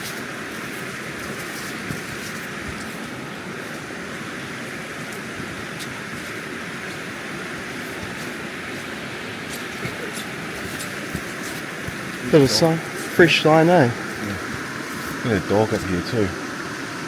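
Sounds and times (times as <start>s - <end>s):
river running over stones: 0.0s - 17.0s.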